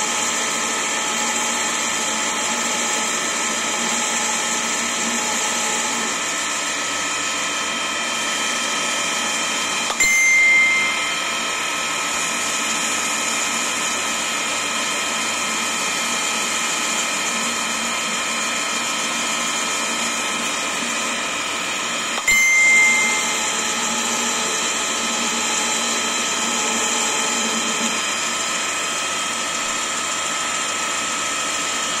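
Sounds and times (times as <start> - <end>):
milling machine whine: 0.0 - 32.0
high ringing tone burst: 9.6 - 13.0, 22.2 - 28.4.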